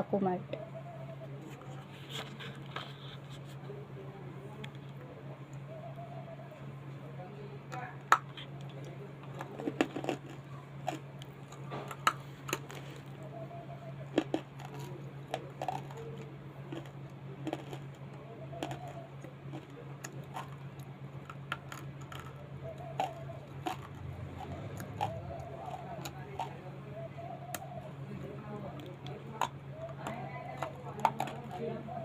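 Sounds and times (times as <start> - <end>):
steady low hum: 0.0 - 32.0
person chewing crunchy snack: 9.4 - 13.1, 14.0 - 26.6.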